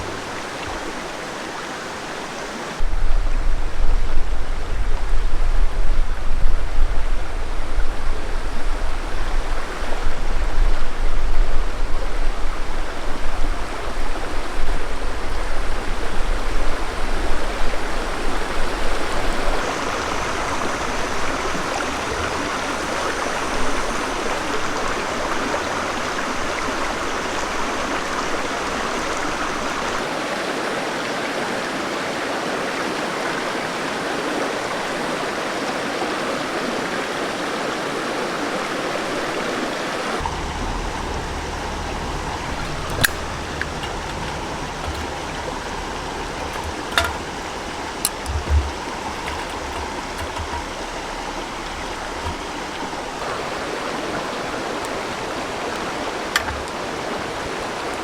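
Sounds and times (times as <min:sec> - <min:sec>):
river water rushing: 0:00.0 - 0:58.0
low rumble: 0:40.2 - 0:53.6.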